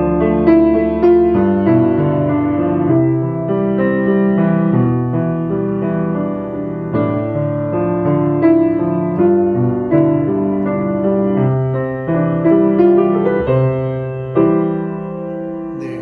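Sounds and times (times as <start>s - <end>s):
piano playing chords: 0.0s - 16.0s.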